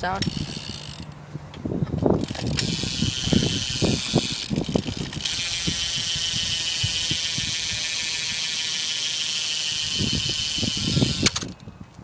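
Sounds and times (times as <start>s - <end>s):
bicycle freewheel clicking: 0.0s - 1.1s, 2.2s - 11.6s.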